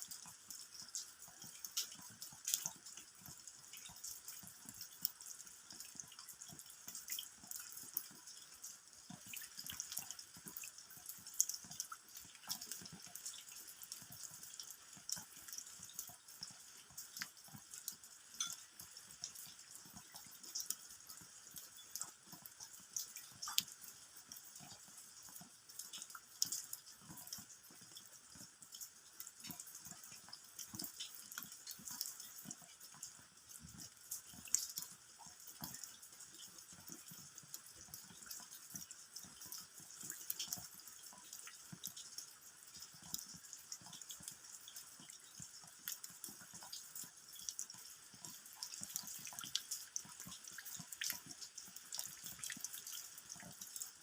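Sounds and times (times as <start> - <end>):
rain falling on ground: 0.0 - 54.0.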